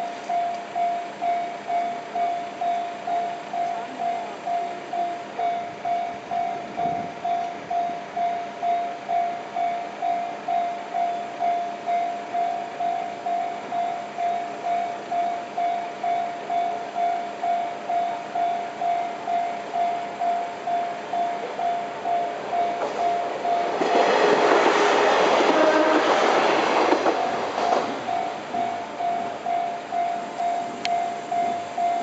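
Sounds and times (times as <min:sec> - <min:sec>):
level crossing warning bell ringing: 0:00.0 - 0:32.0.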